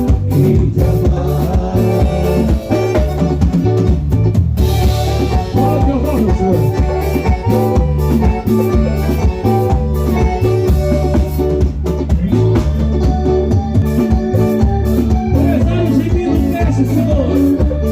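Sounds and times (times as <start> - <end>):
band playing latin music: 0.0 - 17.9.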